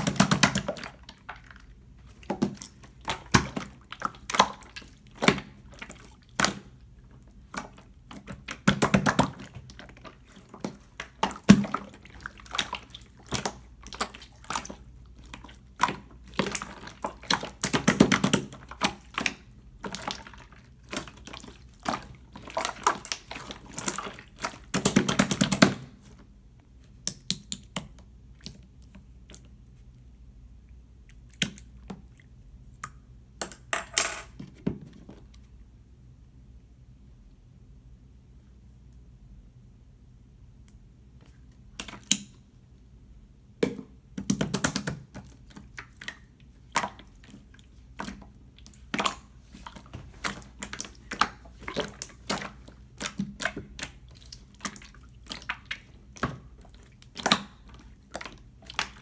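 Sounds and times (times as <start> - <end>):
slime squishing and popping: 0.0 - 1.5, 7.4 - 26.0, 44.2 - 59.0
slime crackling: 0.0 - 26.0, 45.2 - 59.0.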